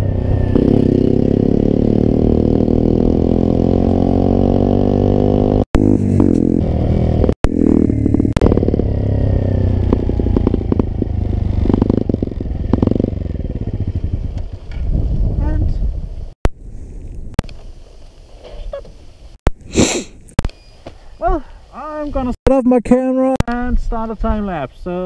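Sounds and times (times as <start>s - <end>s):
small engine slowing and idling: 6.6s - 14.9s.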